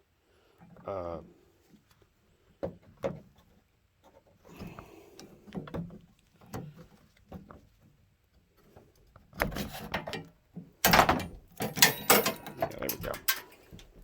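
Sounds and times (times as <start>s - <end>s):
metal knocks and clicks: 10.8s - 13.9s
metal parts clattering: 10.9s - 13.7s.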